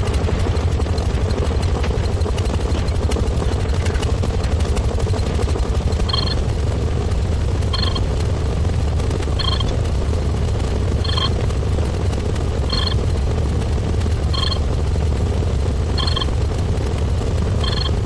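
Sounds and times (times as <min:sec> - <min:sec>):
short high-pitched beeps: 0:06.1 - 0:06.4, 0:07.7 - 0:08.0, 0:09.4 - 0:09.7, 0:11.0 - 0:11.3, 0:12.7 - 0:13.0, 0:14.3 - 0:14.6, 0:16.0 - 0:16.3, 0:17.6 - 0:18.0.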